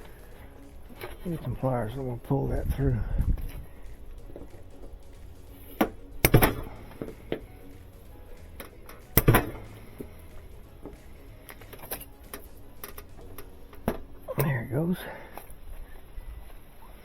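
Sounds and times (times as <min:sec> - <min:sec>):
metal parts clicking and clanking: 0:10.8 - 0:14.5.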